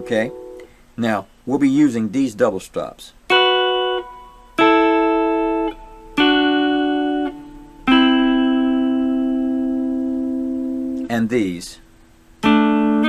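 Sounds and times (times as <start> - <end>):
guitar two-note chords: 0.0 - 0.7, 3.3 - 11.2, 12.4 - 13.0.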